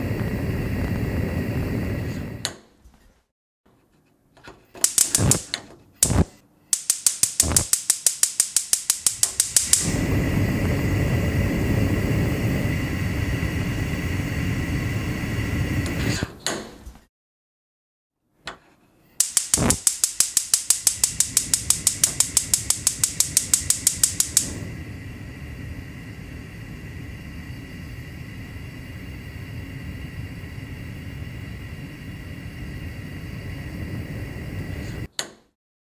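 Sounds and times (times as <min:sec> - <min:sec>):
gas flame hissing: 0:00.0 - 0:02.6, 0:04.8 - 0:16.4, 0:19.2 - 0:35.1
stove knob clicks: 0:04.8 - 0:06.2, 0:06.8 - 0:09.9, 0:19.2 - 0:24.6
gas igniter ticking: 0:04.8 - 0:11.0, 0:19.2 - 0:24.7.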